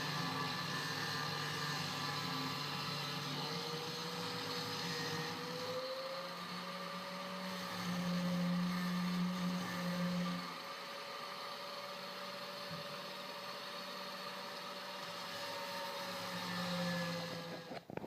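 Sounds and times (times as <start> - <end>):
angle grinder cutting steel: 0.0 - 17.9.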